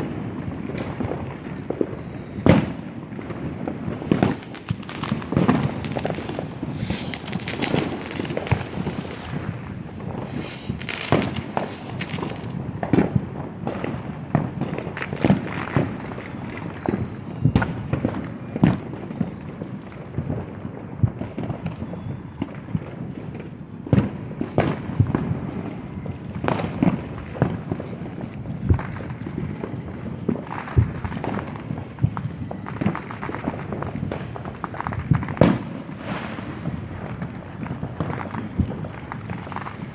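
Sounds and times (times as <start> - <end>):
crackling firework pops: 0.0 - 39.9
firework bangs: 0.7 - 17.0, 26.4 - 39.9
faint falling whistles: 3.9 - 12.6.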